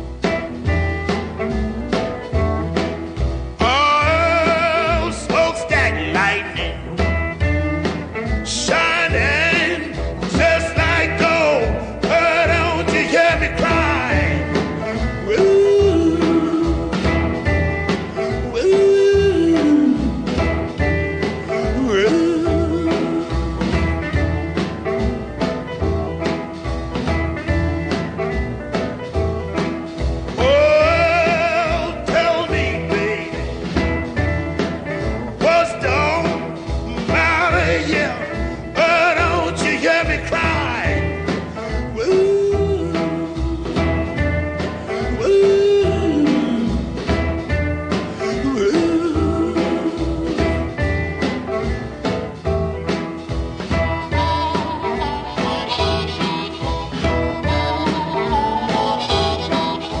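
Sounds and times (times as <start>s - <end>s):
country blues song: 0.0s - 60.0s
guitar: 0.0s - 60.0s
person singing: 3.6s - 6.9s, 8.5s - 23.7s, 30.4s - 33.8s, 35.4s - 51.7s, 53.9s - 60.0s.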